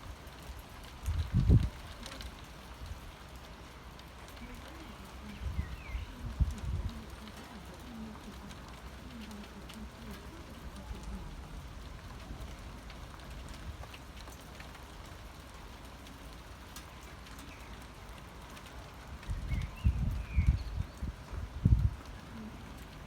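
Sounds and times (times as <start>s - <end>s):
faint outdoor hiss: 0.0s - 23.0s
low rumbling on microphone: 1.0s - 3.2s, 5.2s - 7.5s, 19.1s - 23.0s
light ticks: 12.1s - 19.7s.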